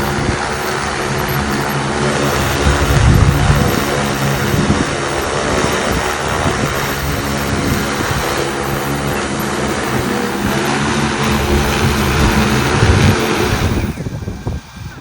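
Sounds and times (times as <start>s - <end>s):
drone propellers humming: 0.0s - 15.0s.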